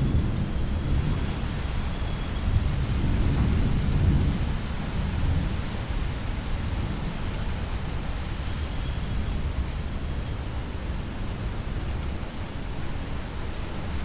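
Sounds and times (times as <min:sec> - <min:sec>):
low rumble of thunder: 0:00.0 - 0:07.2
steady rain: 0:00.0 - 0:14.0.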